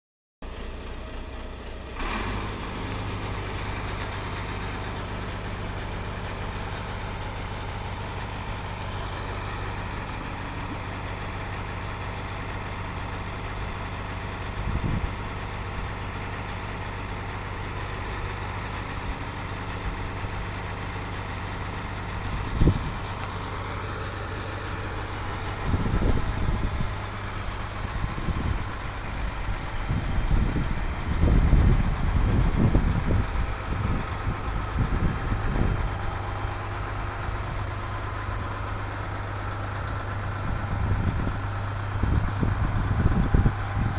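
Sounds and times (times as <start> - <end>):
car engine idling: 0.4 - 43.9
short sharp noise: 2.0 - 6.2.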